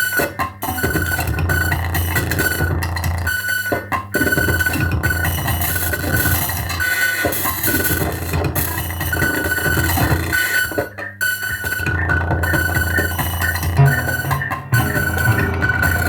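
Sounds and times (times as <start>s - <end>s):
electronic synthesizer music: 13.7s - 16.0s.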